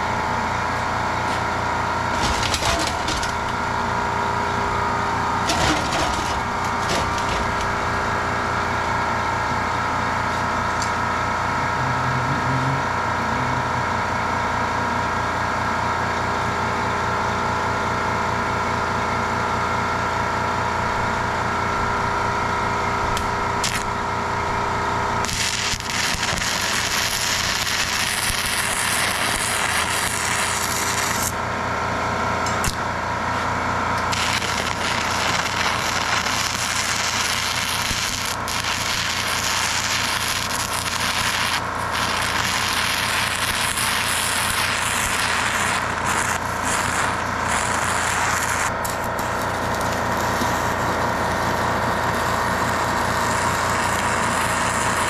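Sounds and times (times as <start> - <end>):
angle grinder whining: 34.0 - 55.0
grinder disc hissing on steel: 41.2 - 50.9.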